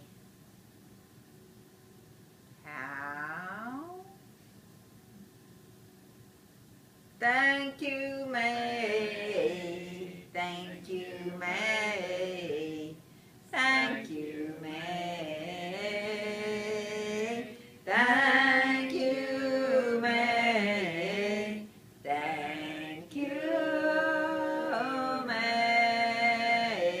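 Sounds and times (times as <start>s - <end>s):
unaccompanied vocal chanting: 7.2s - 27.0s.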